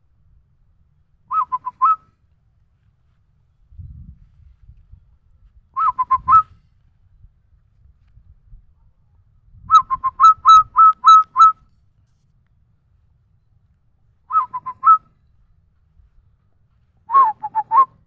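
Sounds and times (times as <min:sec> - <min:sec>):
person whistling bird call: 0:01.3 - 0:02.0, 0:05.8 - 0:06.5, 0:09.7 - 0:11.5, 0:14.3 - 0:15.0, 0:17.1 - 0:18.0.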